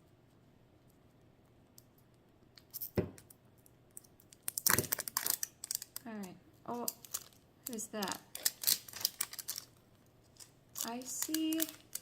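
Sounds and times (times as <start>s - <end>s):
packaging crinkling: 4.4s - 6.1s, 6.7s - 12.0s.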